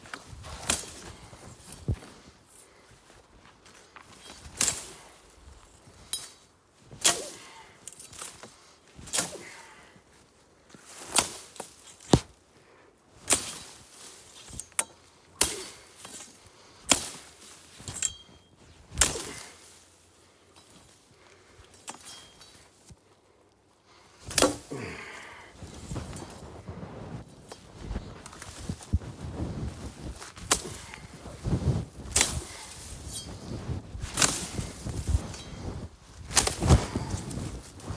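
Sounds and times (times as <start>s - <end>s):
rustle: 0.0s - 37.9s
blade chopping stalks: 18.9s - 19.6s, 24.2s - 25.2s, 27.5s - 35.6s, 36.2s - 37.9s.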